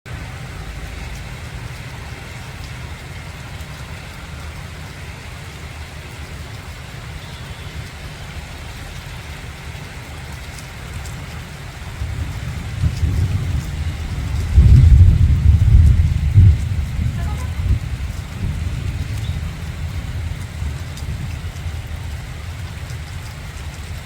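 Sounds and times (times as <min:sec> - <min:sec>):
light drip ticks: 0:00.1 - 0:24.0
steady rain falling: 0:00.1 - 0:24.0
low rumble: 0:11.0 - 0:24.0.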